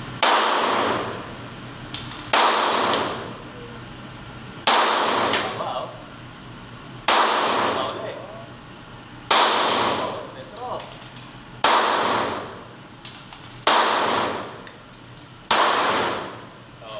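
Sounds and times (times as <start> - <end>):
pistol shots echoing: 0.2 - 1.1, 2.3 - 3.2, 4.6 - 5.6, 7.1 - 8.0, 9.3 - 10.2, 11.6 - 12.5, 13.6 - 14.5, 15.5 - 16.4.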